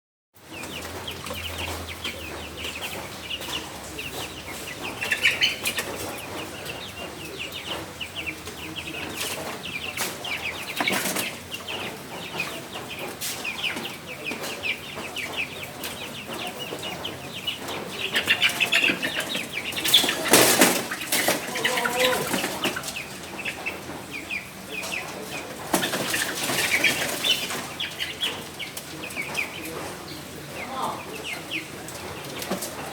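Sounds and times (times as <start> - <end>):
chickens clucking: 0.4 - 32.9
chicken wings flapping: 18.7 - 23.2.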